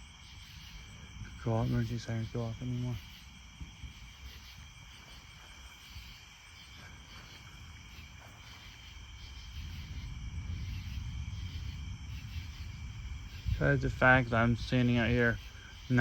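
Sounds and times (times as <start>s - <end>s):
crickets and insects chirping: 0.0s - 16.0s
low rumble: 7.0s - 16.0s.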